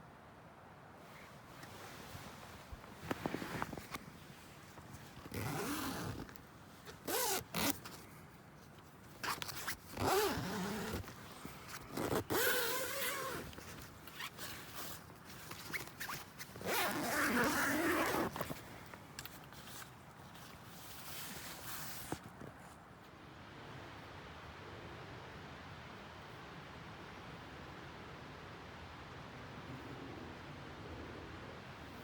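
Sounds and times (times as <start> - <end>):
zipper being pulled: 1.6 - 4.1, 5.0 - 8.0, 9.2 - 22.2.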